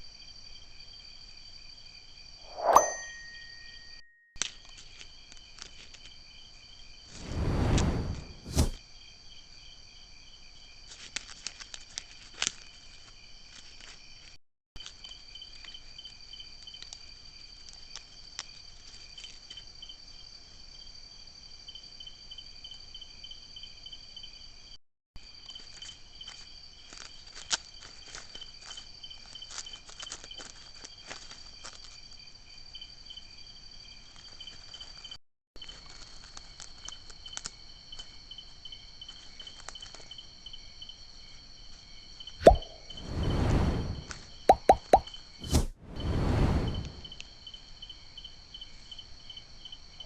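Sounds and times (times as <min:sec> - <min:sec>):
night insects chorus: 0:25.3 - 0:42.4, 0:47.1 - 0:50.0
animal gnawing dry corn husks: 0:26.9 - 0:31.8.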